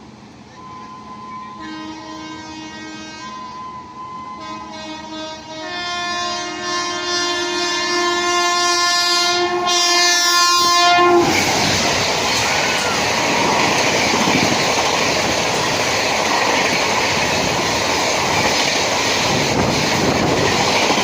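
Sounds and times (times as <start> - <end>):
train rushing past: 0.0 - 21.0
locomotive horn blast: 0.5 - 11.8.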